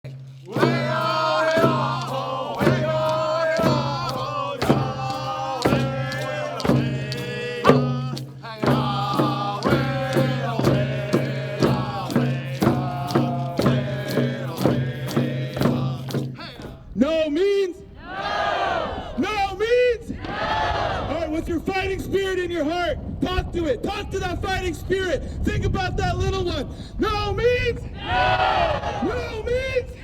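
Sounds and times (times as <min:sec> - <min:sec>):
steady drum beat: 0:00.0 - 0:17.0
voices chanting a song: 0:00.1 - 0:17.0, 0:18.0 - 0:19.3, 0:20.1 - 0:21.4, 0:28.0 - 0:29.3.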